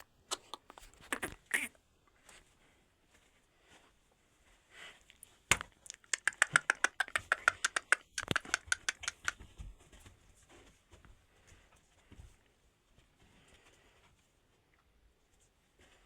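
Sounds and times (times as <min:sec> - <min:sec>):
quick sharp clicks: 0:05.5 - 0:09.4.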